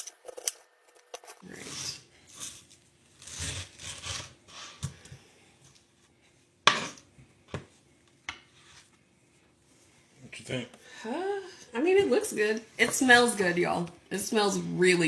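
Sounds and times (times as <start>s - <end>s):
knife slicing pineapple: 0.0s - 1.4s.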